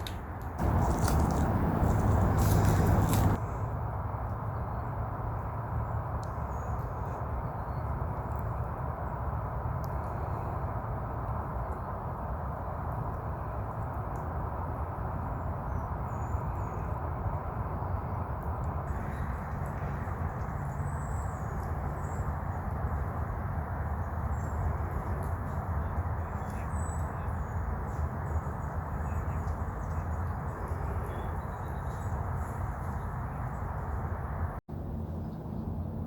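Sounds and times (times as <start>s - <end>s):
heavy low rumble: 0.6s - 3.4s.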